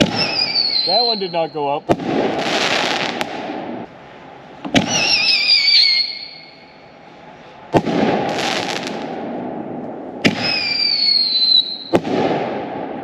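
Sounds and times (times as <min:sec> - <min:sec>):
falling firework whistle: 0:00.0 - 0:01.6, 0:04.8 - 0:06.8, 0:10.2 - 0:12.2
firework bangs: 0:00.0 - 0:03.9, 0:04.6 - 0:06.6, 0:07.7 - 0:13.0.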